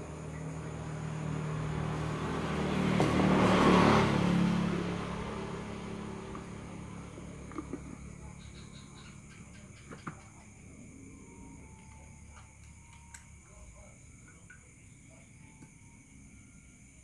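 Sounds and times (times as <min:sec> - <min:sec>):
road vehicle passing by: 0:00.0 - 0:12.5.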